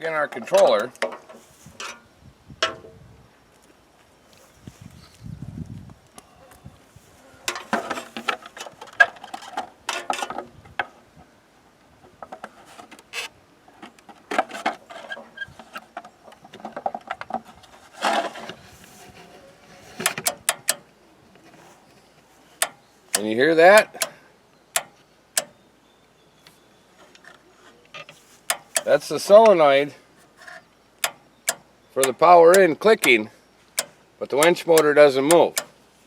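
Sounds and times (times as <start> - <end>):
winch solenoid clicking: 20.0 - 20.9, 22.6 - 25.6, 28.4 - 29.6, 31.0 - 35.8.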